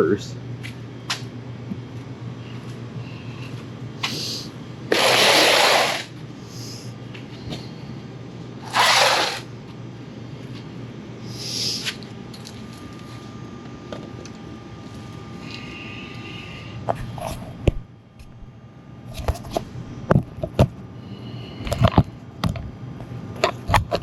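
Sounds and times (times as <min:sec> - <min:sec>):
steady low hum: 0:00.0 - 0:24.0
sandpaper scrubbing bodywork: 0:04.9 - 0:06.1, 0:08.6 - 0:09.4.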